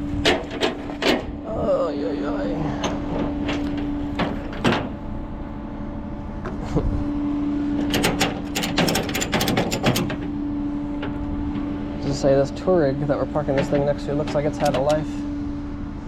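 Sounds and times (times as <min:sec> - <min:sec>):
truck engine humming: 0:00.0 - 0:16.0
metallic clicks and clanks: 0:00.2 - 0:01.4, 0:02.8 - 0:05.0, 0:07.8 - 0:10.4, 0:13.5 - 0:15.2.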